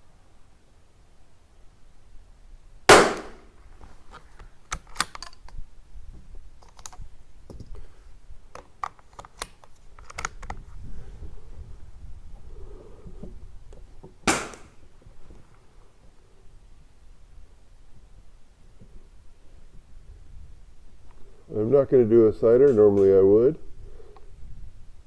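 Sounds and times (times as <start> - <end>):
rifle shot: 2.9 - 3.6, 14.2 - 14.8
rifle bolt metallic clicks: 4.1 - 5.6, 6.6 - 7.7, 8.5 - 10.6.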